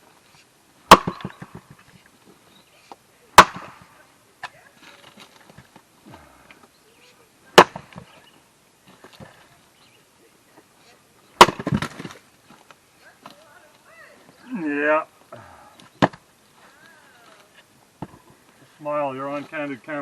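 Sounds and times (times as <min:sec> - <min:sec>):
axe striking wood: 0:00.9 - 0:01.8, 0:03.4 - 0:03.9, 0:07.6 - 0:08.1, 0:11.4 - 0:12.2.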